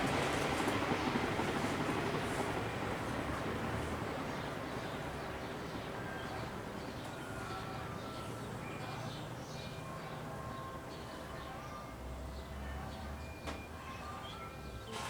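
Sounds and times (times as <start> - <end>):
ceiling fan air rush: 0.0 - 8.6.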